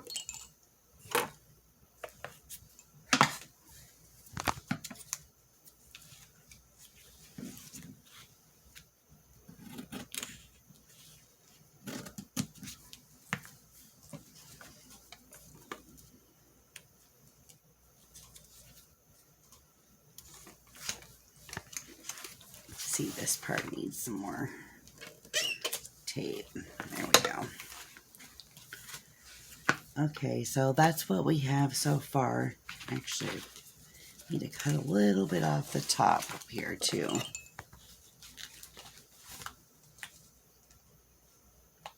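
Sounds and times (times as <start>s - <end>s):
paper rustling: 19.5s - 30.0s, 31.9s - 40.3s.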